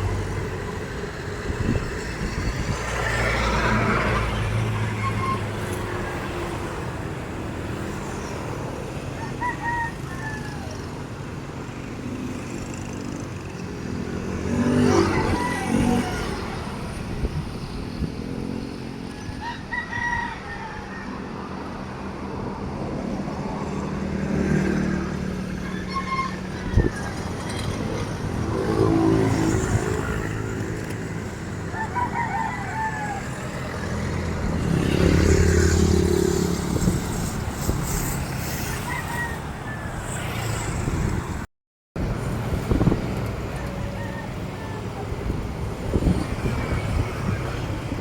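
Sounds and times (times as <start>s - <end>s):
rooster crowing: 9.2s - 10.9s, 14.9s - 16.4s, 19.1s - 21.6s, 31.6s - 35.5s, 38.4s - 40.7s.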